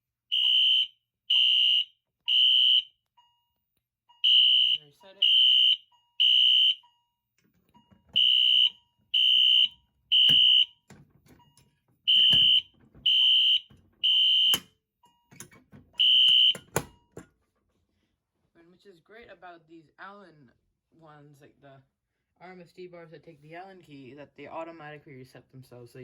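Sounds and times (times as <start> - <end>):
fire alarm horn beeping: 0.3 - 3.0, 4.2 - 7.0, 7.9 - 14.7, 15.4 - 17.0
knocks and clicks of alarm handle: 7.7 - 14.7, 15.3 - 17.3.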